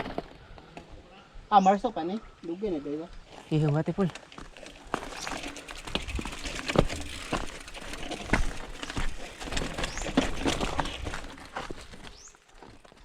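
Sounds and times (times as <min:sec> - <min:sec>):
tyres rustling on loose ground: 0:00.0 - 0:13.0
mountain bike knocks and rattles: 0:04.6 - 0:12.1.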